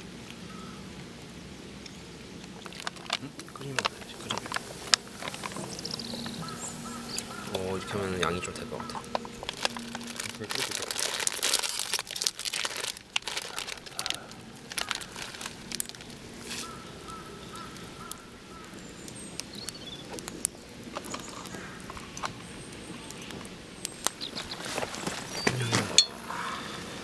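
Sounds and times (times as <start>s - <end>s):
crinkling and crackling food wrapping: 0.0s - 27.0s
faint high chirps: 5.5s - 11.8s.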